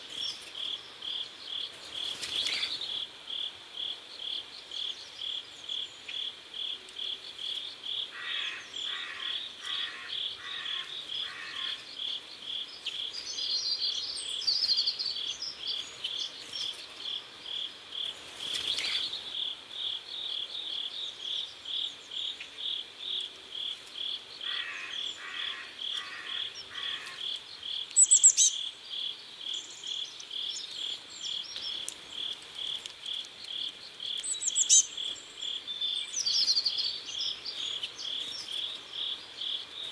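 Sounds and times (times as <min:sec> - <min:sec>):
crickets chirping: 0:00.0 - 0:39.9
lower rasping insect call: 0:00.0 - 0:39.9.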